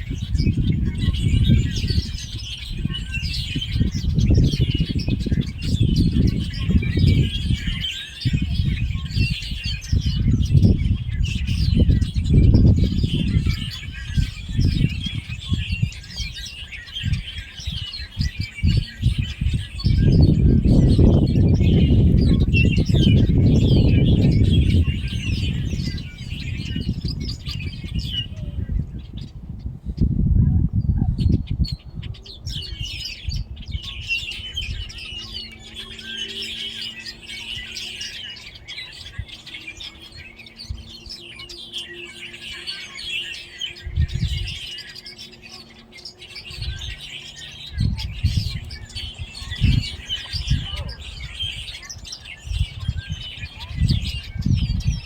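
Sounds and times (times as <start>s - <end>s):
gusty low rumble: 0.0s - 34.0s, 43.8s - 44.6s, 47.7s - 51.7s, 52.4s - 55.0s
small birds chirping: 0.0s - 55.0s.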